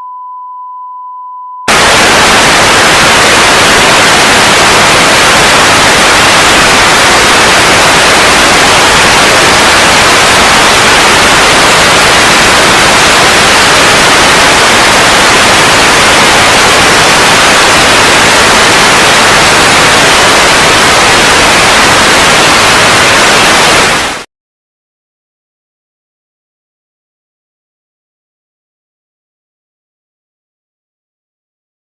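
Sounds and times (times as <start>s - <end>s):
static hiss: 1.7s - 24.3s.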